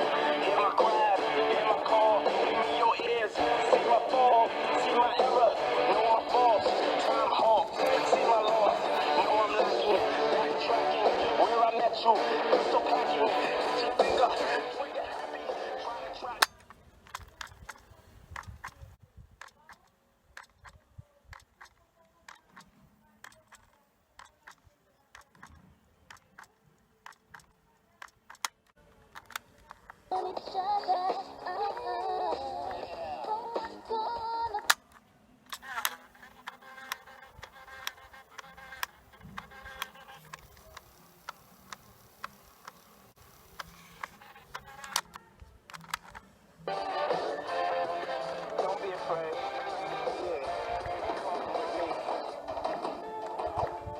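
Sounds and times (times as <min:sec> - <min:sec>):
small parts and tools clicking: 0:16.4 - 0:30.1, 0:34.6 - 0:46.3.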